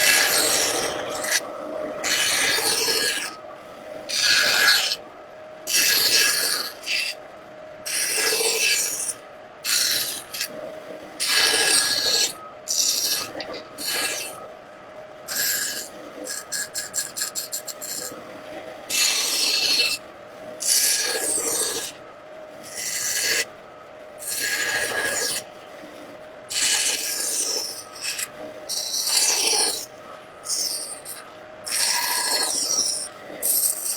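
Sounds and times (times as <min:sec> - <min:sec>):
hand tool rasping on wood: 0:00.0 - 0:01.4, 0:26.5 - 0:29.8, 0:30.5 - 0:33.9.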